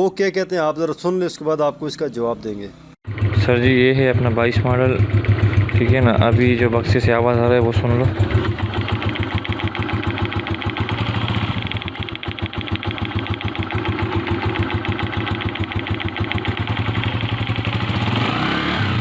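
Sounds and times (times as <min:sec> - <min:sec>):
motorcycle engine idling: 0:03.0 - 0:19.0
mechanical ticking clatter: 0:04.6 - 0:17.9.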